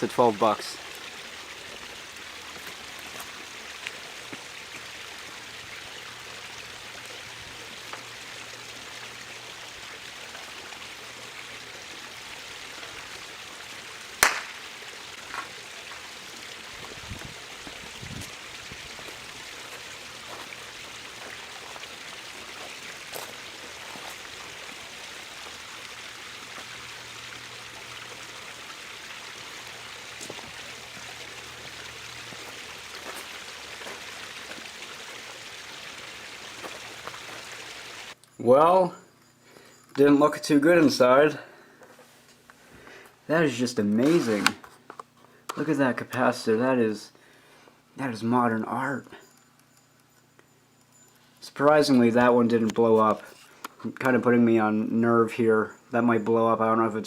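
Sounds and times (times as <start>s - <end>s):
sharp loud pop: 14.2s - 14.6s.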